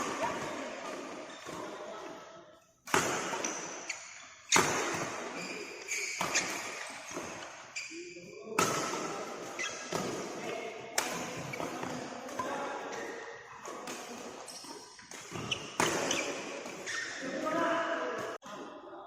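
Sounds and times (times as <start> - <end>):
short high squeaks: 5.3 - 7.1.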